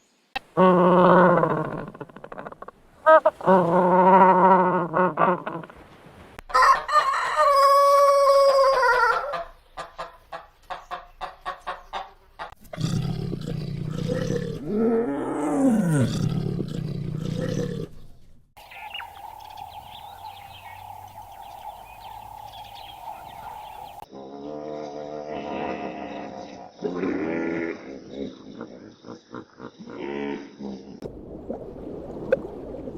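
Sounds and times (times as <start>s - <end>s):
rough animal call: 0.6s - 5.8s, 12.5s - 24.0s
rooster crowing: 6.5s - 9.4s.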